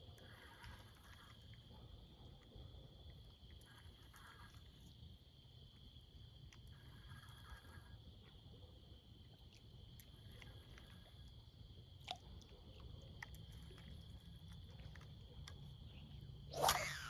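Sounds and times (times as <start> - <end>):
insects trilling: 0.0 - 17.0
loud swish: 16.6 - 17.0.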